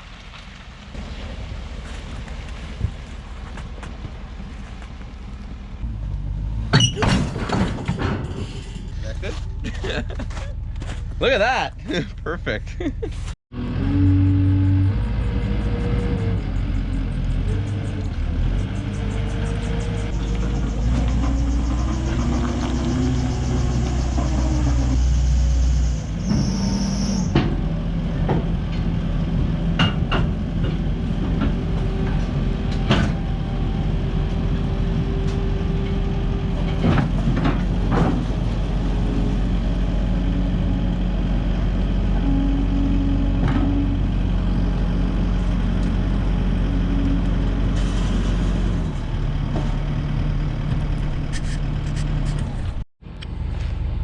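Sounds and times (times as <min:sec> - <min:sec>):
diesel engine running: 0:13.5 - 0:54.0.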